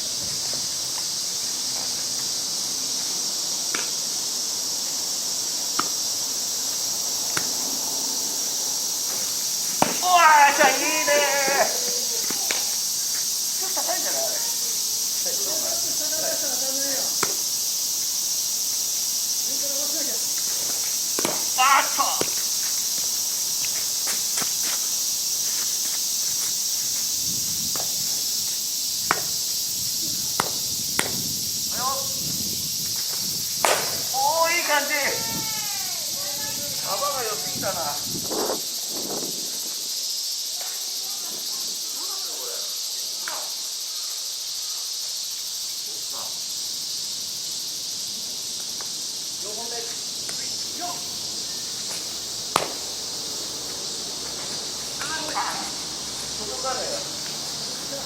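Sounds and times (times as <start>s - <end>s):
insects chirring: 0.0s - 58.0s
sharp knocks: 9.8s - 10.1s, 21.2s - 21.5s.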